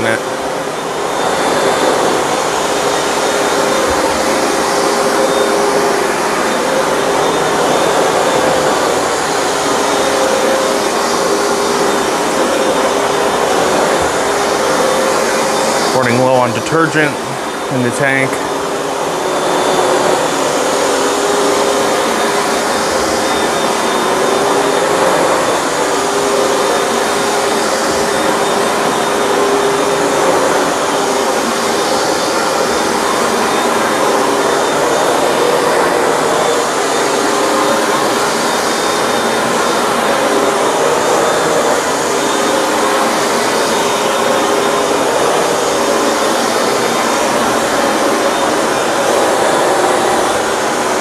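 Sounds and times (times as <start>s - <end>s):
carpet cleaner running: 0.0s - 51.0s.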